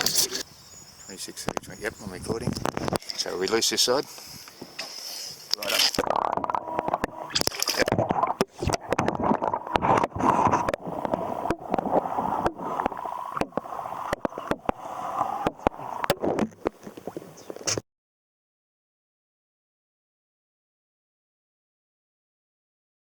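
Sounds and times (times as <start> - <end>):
water sloshing and splashing: 5.4 - 17.8.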